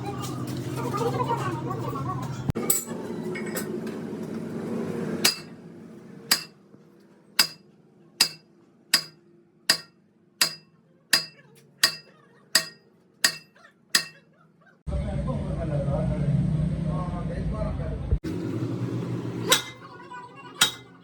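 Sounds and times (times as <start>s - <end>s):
hammer striking metal: 5.2s - 5.5s, 6.3s - 6.6s, 7.4s - 7.6s, 8.2s - 14.2s, 19.5s - 19.8s, 20.6s - 21.0s.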